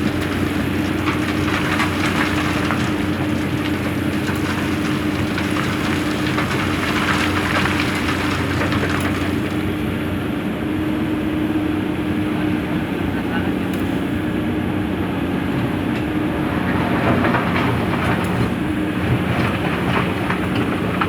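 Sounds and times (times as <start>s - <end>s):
stone grinding in steel bucket: 0.0s - 9.8s
excavator diesel engine: 0.0s - 21.0s.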